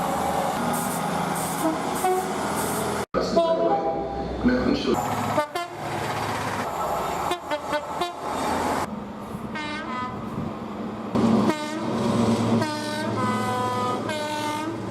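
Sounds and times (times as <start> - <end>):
train running noise: 0.0 - 3.0, 5.0 - 14.9
train horn blasts: 1.6 - 2.4, 5.3 - 5.8, 7.2 - 8.3, 9.5 - 10.2, 11.4 - 12.0, 12.6 - 14.8.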